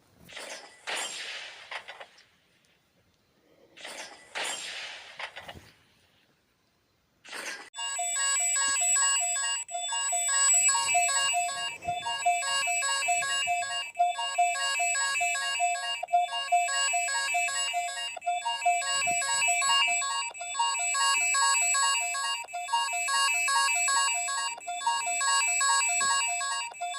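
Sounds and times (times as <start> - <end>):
pulsing electronic alert tone: 7.8 - 26.9.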